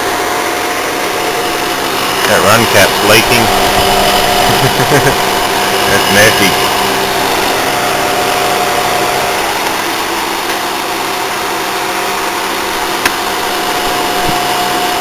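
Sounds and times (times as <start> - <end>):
air conditioner running: 0.0 - 15.0
sharp click: 13.0 - 13.2.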